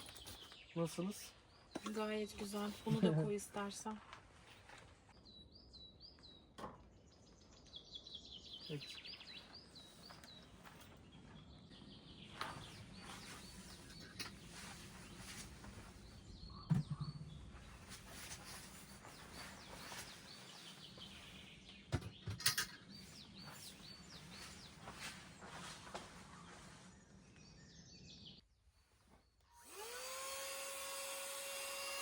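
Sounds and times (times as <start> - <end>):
small birds chirping: 0.0 - 30.3
camping gear knocking and rustling: 12.4 - 26.2.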